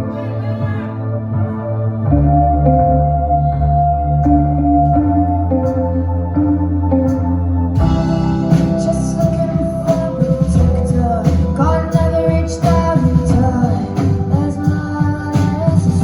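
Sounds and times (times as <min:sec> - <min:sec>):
woman singing: 0:00.0 - 0:01.6, 0:08.9 - 0:16.0
bass: 0:00.0 - 0:16.0
guitar: 0:00.0 - 0:16.0
drum beat: 0:07.8 - 0:16.0.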